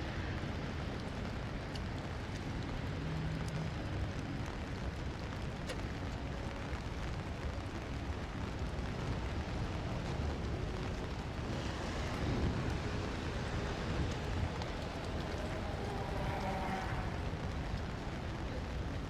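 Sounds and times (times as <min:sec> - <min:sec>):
continuous low rumble: 0:00.0 - 0:19.0
rain hissing on street: 0:00.0 - 0:19.0.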